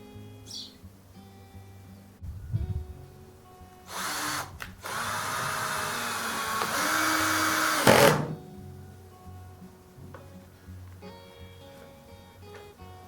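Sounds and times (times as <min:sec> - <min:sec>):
soft acoustic guitar music: 0:00.0 - 0:03.9, 0:08.3 - 0:13.0
power tool cutting wood: 0:03.9 - 0:08.4.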